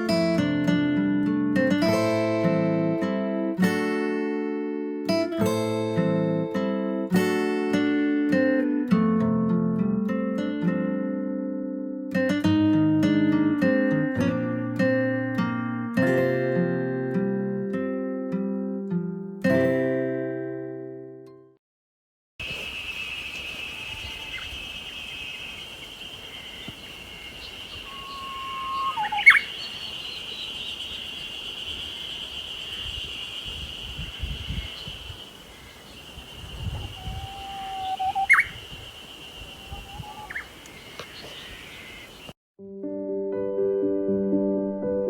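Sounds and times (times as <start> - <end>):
bush warbler singing: 22.4 - 42.3.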